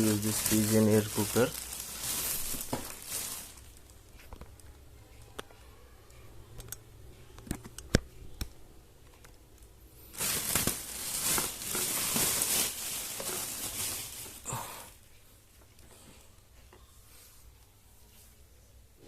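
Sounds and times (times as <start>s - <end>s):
packaging rustling and crinkling: 0.0s - 4.6s, 10.0s - 14.8s.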